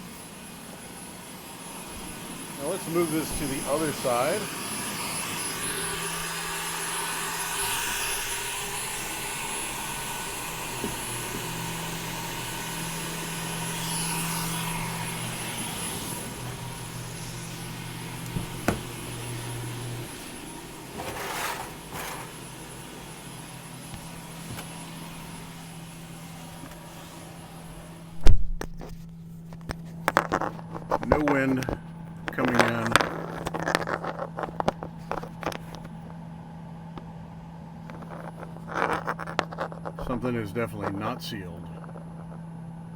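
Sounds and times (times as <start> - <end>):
air blower running: 0.0 - 28.4, 29.2 - 42.9
loud thump: 18.4 - 19.0.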